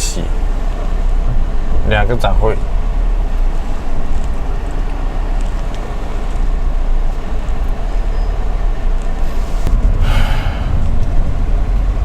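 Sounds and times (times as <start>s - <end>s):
car driving rumble from inside: 0.0s - 12.0s.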